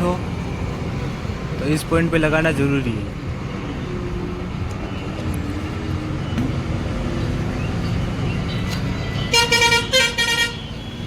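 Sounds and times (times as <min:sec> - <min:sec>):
road traffic rumble: 0:00.0 - 0:11.0.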